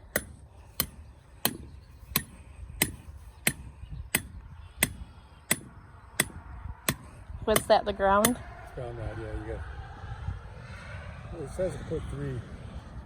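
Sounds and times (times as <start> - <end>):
hammer striking metal rod: 0.1 - 3.6, 4.2 - 8.4.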